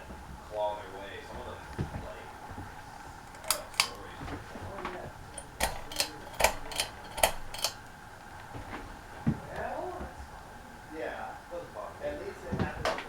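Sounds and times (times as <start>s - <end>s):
pull-chain switch clicking: 3.3s - 4.2s, 5.3s - 8.0s.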